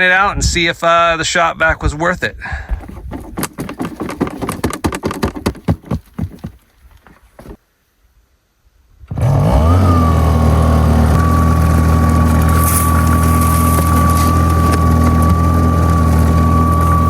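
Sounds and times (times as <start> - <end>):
clatter of knocks and rattles: 2.7 - 7.6
blower whine: 9.1 - 17.0
small gasoline engine running: 9.1 - 17.0.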